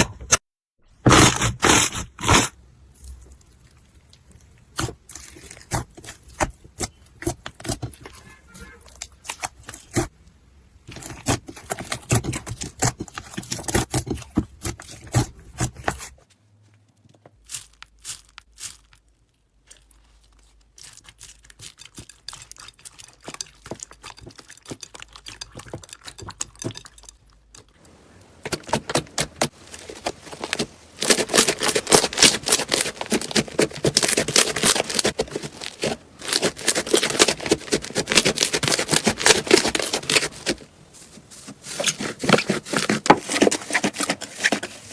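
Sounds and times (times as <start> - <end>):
slime popping and crackling: 27.6 - 40.6.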